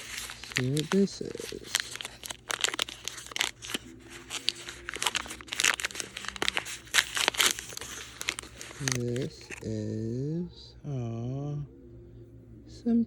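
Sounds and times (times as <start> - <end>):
plastic wrapper crinkling and tearing: 0.0 - 9.6.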